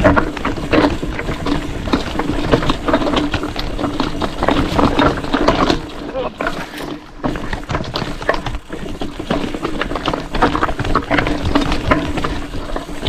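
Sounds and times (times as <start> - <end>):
bike rattling over rough trail: 0.0 - 13.0.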